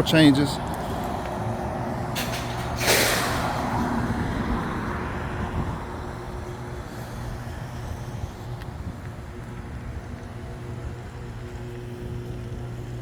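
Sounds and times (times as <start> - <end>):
hiss: 2.8 - 3.6.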